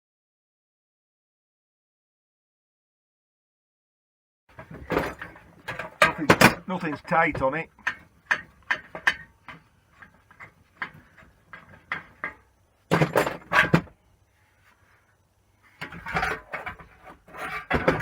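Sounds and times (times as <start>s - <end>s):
metal clanks and knocks: 4.5s - 14.0s, 15.8s - 18.0s.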